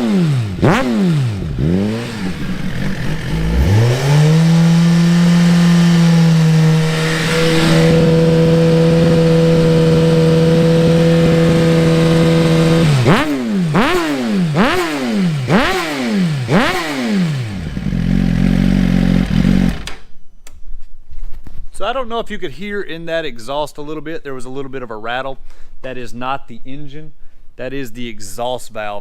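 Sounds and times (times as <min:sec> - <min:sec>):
exhaust rattle: 0:00.0 - 0:20.0
motorcycle engine revving: 0:00.0 - 0:20.0.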